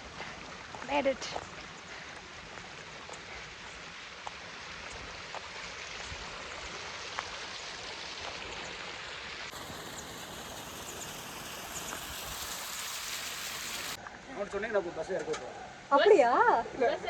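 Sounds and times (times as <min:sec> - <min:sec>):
heavy rain hissing: 0:02.9 - 0:14.0.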